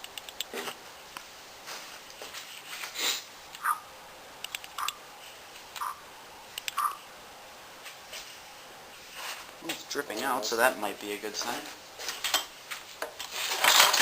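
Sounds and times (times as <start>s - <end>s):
light clicks: 4.4s - 5.0s.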